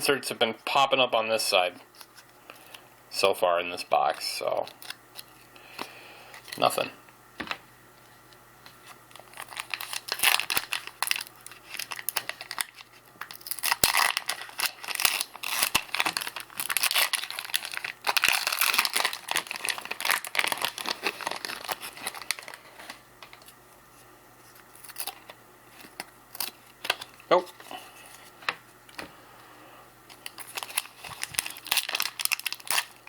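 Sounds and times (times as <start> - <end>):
plastic wrapper tearing and crinkling: 4.1 - 5.6, 8.8 - 23.6, 24.4 - 29.0, 30.1 - 33.0.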